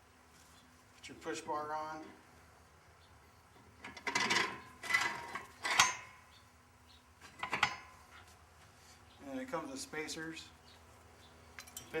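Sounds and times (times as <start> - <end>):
metal tool parts clanking: 3.8 - 6.1, 11.6 - 12.0.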